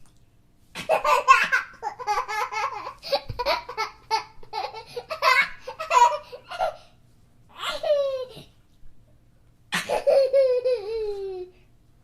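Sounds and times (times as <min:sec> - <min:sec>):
baby laughing: 0:00.8 - 0:06.8, 0:09.8 - 0:11.5.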